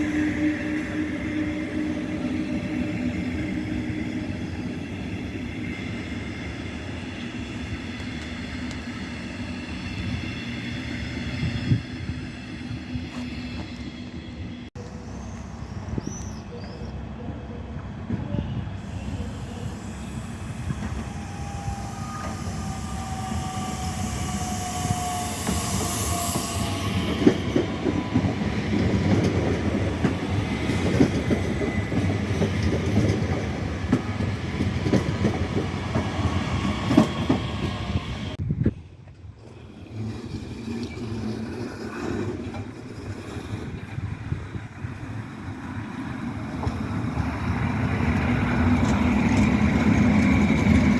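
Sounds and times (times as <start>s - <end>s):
train rumbling: 0.0s - 50.9s
wheel squeals: 19.0s - 28.6s.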